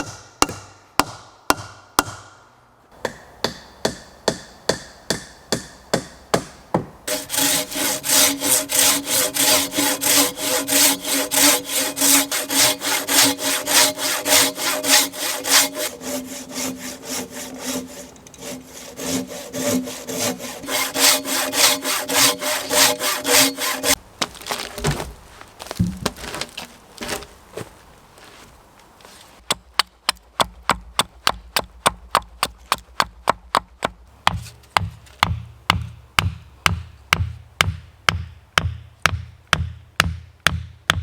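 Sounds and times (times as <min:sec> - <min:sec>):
hand saw cutting wood: 0:03.0 - 0:25.1.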